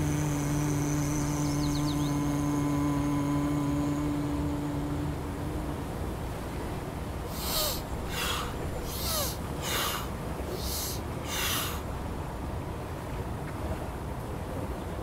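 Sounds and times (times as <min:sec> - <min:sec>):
low background hum: 0:00.0 - 0:14.9
person breathing out forcefully: 0:07.3 - 0:11.9.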